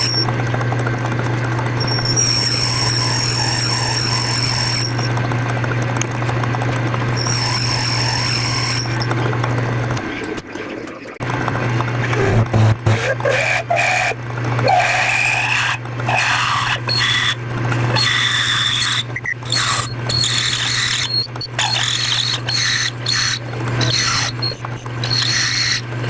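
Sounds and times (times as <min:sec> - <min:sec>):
cutting tool scraping and squealing: 0:00.0 - 0:00.3, 0:01.8 - 0:05.2, 0:07.1 - 0:09.4, 0:12.1 - 0:26.0
lathe humming: 0:00.0 - 0:11.0.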